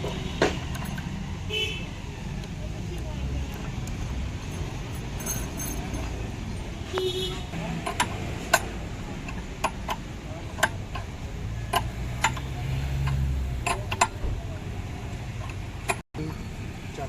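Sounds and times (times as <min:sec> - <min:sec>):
hand tools clicking and tapping: 0:00.4 - 0:01.2, 0:02.3 - 0:06.2, 0:07.6 - 0:16.4.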